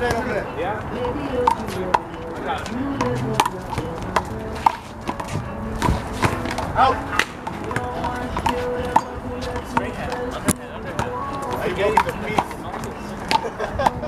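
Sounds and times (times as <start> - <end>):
background music: 0.0 - 14.0
handball smacking and bouncing: 3.0 - 13.4.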